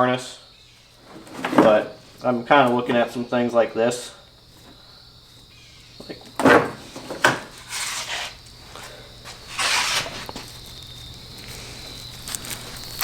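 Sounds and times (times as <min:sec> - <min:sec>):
clunk: 0:01.0 - 0:02.2, 0:06.0 - 0:08.2
scraping: 0:01.0 - 0:03.0, 0:06.0 - 0:10.6.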